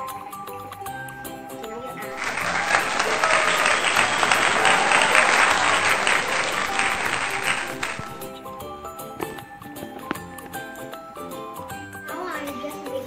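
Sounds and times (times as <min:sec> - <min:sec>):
crowd applauding and cheering: 0:02.1 - 0:08.3
light background music: 0:08.2 - 0:13.0.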